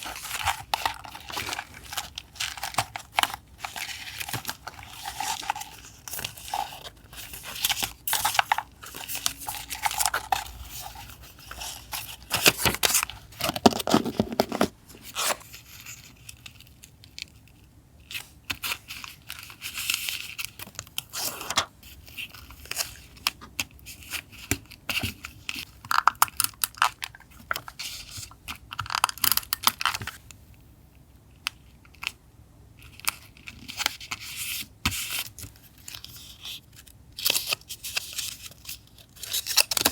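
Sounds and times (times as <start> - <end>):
paper crinkling and tearing: 0.0 - 16.8, 37.2 - 39.9.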